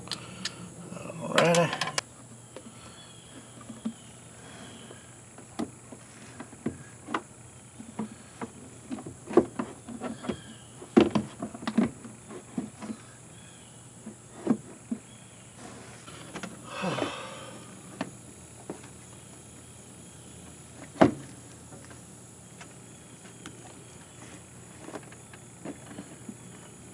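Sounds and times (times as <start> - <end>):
tools clicking and knocking: 1.4 - 2.0.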